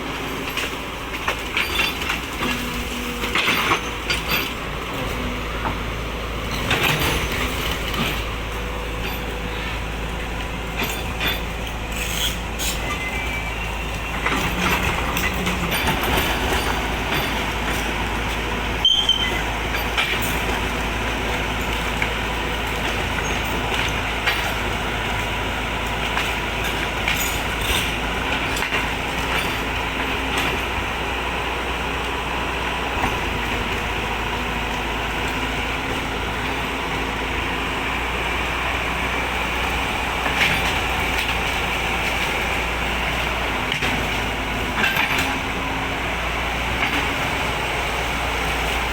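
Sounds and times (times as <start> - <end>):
excavator engine running: 0.0 - 48.9.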